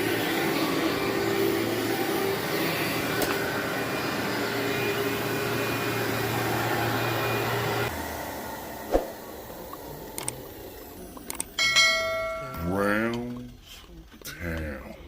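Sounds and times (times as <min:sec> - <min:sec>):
vacuum cleaner running: 0:00.0 - 0:11.6.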